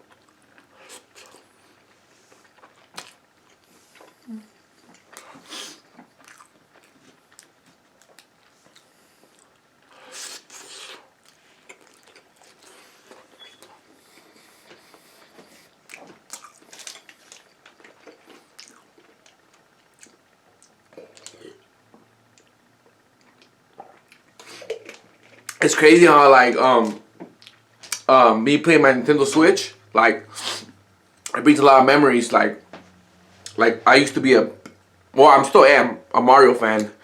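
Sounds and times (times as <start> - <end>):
person chewing: 0.0 - 21.7, 23.2 - 25.6
soft food crunches: 4.8 - 14.3, 15.2 - 21.4.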